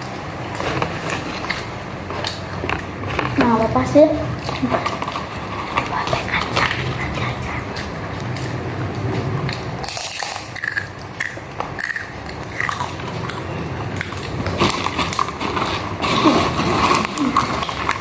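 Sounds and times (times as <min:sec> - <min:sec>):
person chewing crunchy food: 0:04.3 - 0:18.0.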